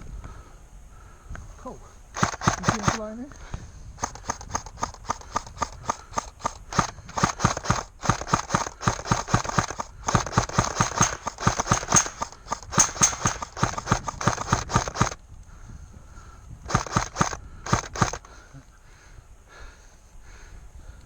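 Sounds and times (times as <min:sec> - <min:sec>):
running footsteps on wooded ground: 0:01.4 - 0:21.0.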